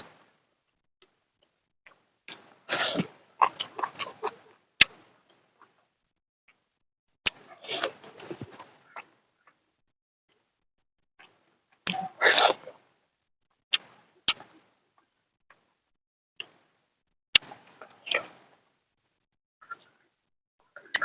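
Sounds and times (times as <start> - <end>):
sharp eating clicks: 1.9 - 5.8, 7.3 - 9.6, 11.2 - 12.8, 13.7 - 14.6, 17.4 - 18.4.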